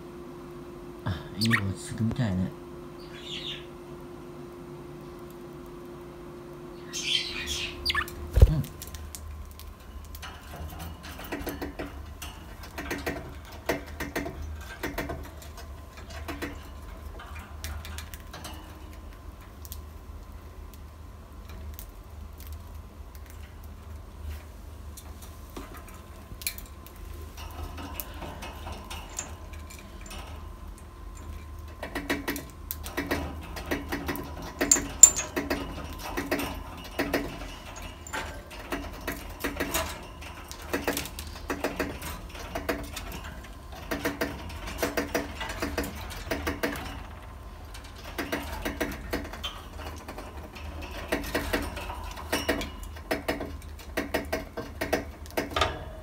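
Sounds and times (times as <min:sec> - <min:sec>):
budgerigars pecking and tapping: 0:01.4 - 0:01.6, 0:07.0 - 0:08.5, 0:31.8 - 0:39.8.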